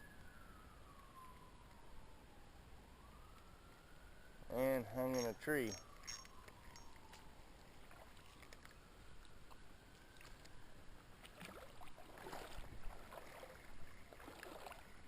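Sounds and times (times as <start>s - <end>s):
shallow creek water running: 4.5s - 15.0s
splashing and rustling: 5.1s - 15.0s.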